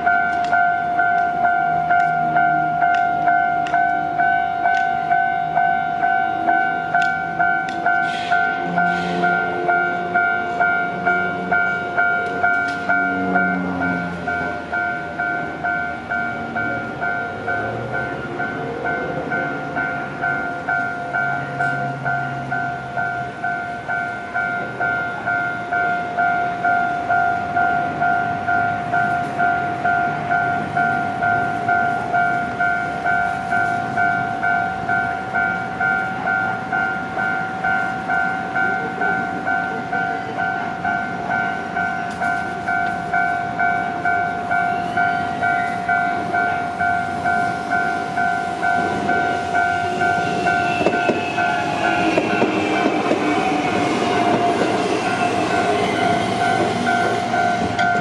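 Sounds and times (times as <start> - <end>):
electric train running: 0.0 - 58.0
level crossing alarm bell ringing: 0.0 - 58.0
train wheels squealing on rails: 0.0 - 58.0.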